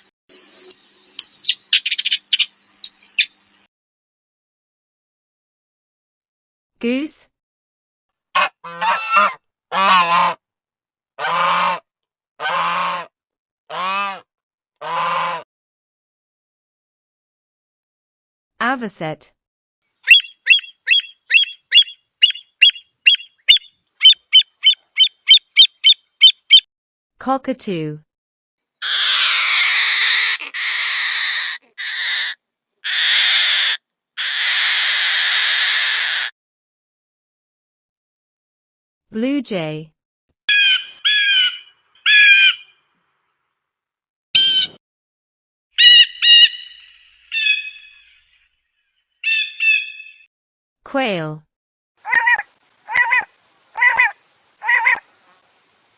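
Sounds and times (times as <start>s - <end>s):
cockatoo screeching: 8.4s - 10.1s, 28.8s - 36.3s, 40.5s - 42.7s, 52.0s - 55.1s
goose honking: 8.4s - 10.4s, 11.2s - 11.8s, 14.8s - 15.4s, 52.0s - 55.0s.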